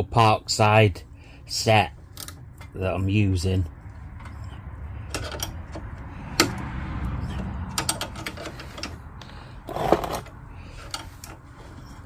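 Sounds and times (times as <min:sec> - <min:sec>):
tool clatter: 0:09.6 - 0:12.0.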